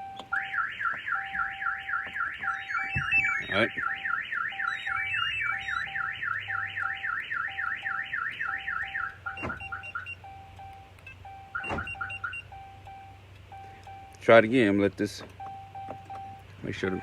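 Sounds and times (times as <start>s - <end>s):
short alarm chirps: 0.0s - 10.4s
vehicle alarm siren wailing: 0.0s - 14.3s, 15.4s - 17.0s
double beep: 2.5s - 7.0s, 8.5s - 14.2s, 15.4s - 17.0s.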